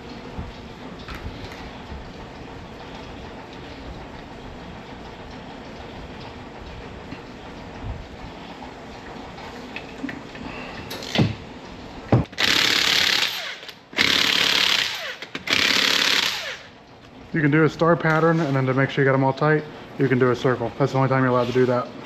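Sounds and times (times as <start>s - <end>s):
impact wrench spinning: 12.2s - 16.8s.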